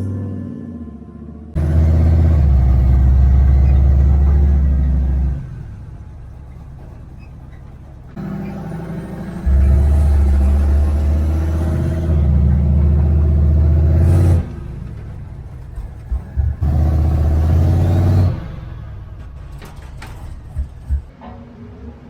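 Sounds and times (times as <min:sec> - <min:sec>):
truck engine droning: 0:00.0 - 0:22.0.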